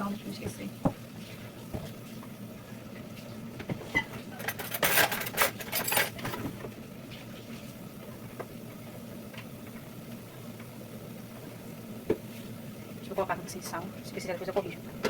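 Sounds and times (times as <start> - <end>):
utensils clinking on cooking pot: 3.9 - 6.2.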